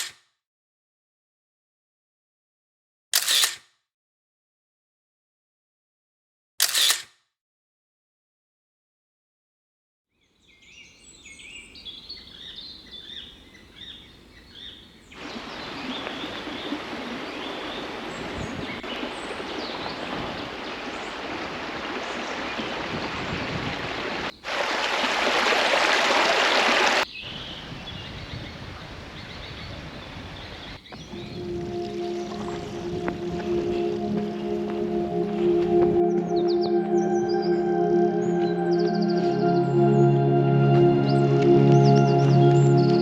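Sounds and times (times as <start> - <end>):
small birds chirping: 10.4 - 23.6, 27.0 - 32.8
rush of flowing water: 15.2 - 27.0.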